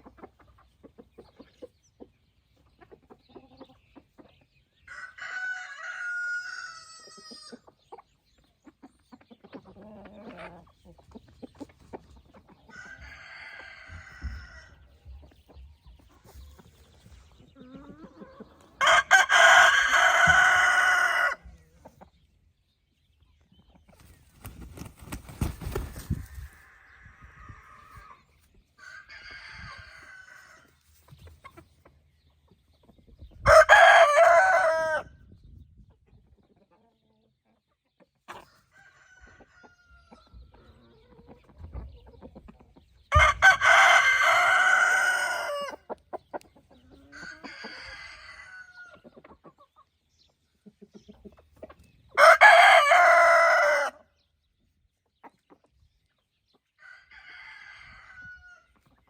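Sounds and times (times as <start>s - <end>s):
faint chicken calls: 0.0s - 22.3s, 23.2s - 59.0s
rooster crowing: 4.9s - 7.2s, 18.8s - 21.4s, 33.5s - 35.1s, 43.2s - 45.7s, 47.2s - 48.9s, 52.2s - 54.0s, 56.8s - 58.7s.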